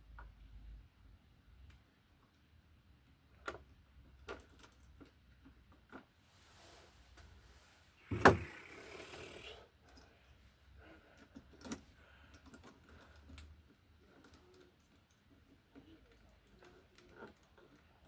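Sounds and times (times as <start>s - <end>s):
sharp knock: 8.1s - 8.6s.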